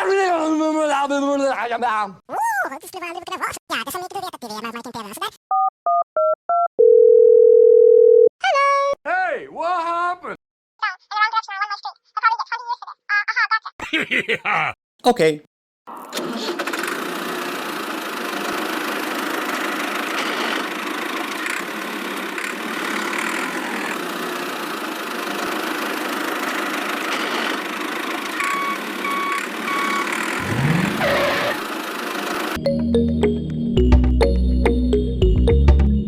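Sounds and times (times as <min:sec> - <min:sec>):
small motor whirring: 0:16.6 - 0:32.6.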